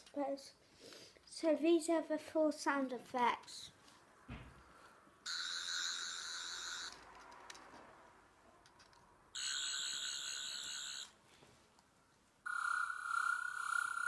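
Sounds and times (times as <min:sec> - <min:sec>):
toy electronic warbling whine: 0:05.3 - 0:07.0, 0:09.4 - 0:11.2, 0:12.5 - 0:14.0.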